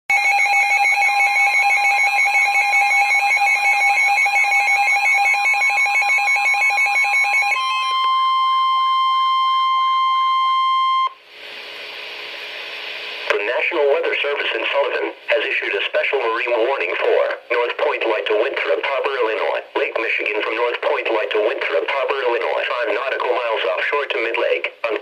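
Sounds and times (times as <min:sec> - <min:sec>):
steady warning alarm tone: 0:00.1 - 0:11.2.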